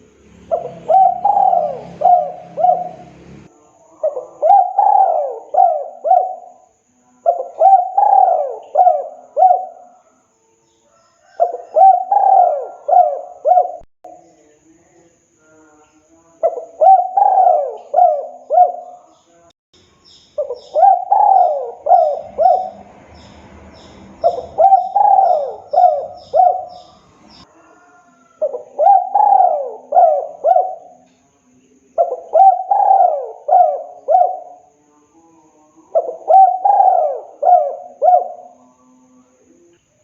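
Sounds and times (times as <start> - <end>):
dove cooing: 0.0 - 6.6, 7.2 - 10.1, 11.2 - 13.9, 16.4 - 19.1, 20.4 - 31.1, 32.0 - 34.7, 35.9 - 38.7
faint high bird chirps: 0.0 - 40.0.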